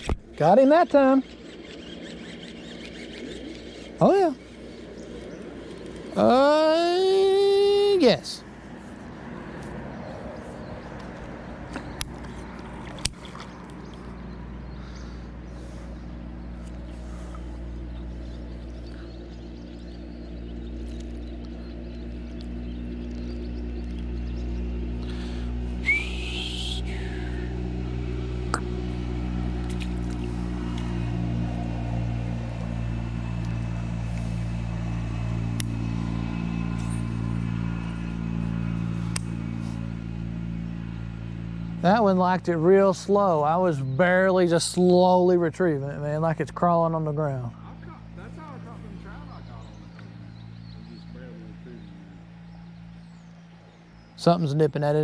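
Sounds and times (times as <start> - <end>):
low motor hum: 0.0 - 55.0
sharp clicks: 35.5 - 35.8, 39.1 - 39.4.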